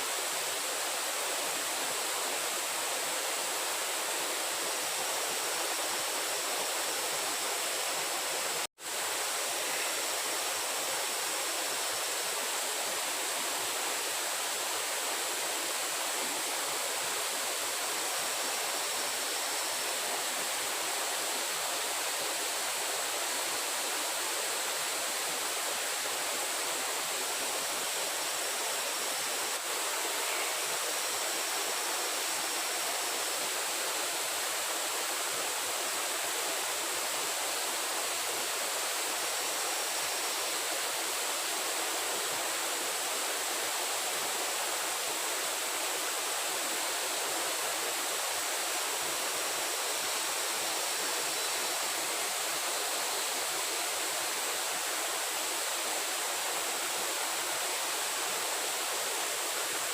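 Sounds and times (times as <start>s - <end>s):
water rushing hiss: 0.0s - 59.9s.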